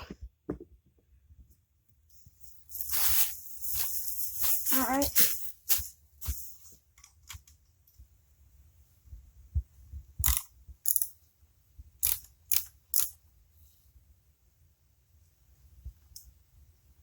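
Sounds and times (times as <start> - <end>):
metallic clicks of hand tools: 10.2 - 11.2, 12.0 - 13.2.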